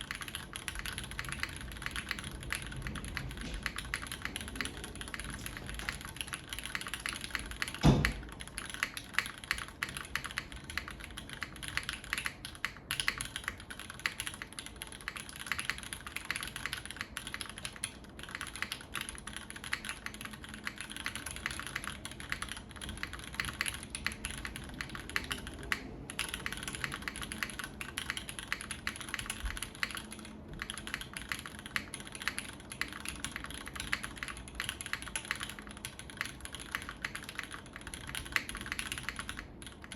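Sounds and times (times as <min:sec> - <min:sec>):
fast mechanical keyboard typing: 0:00.0 - 0:39.9
heavy keyboard thump: 0:07.8 - 0:08.2.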